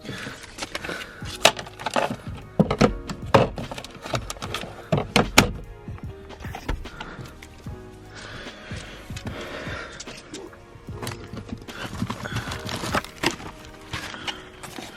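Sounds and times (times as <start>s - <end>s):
background music: 0.0s - 14.9s
sharp knocks and clunks: 0.7s - 7.8s.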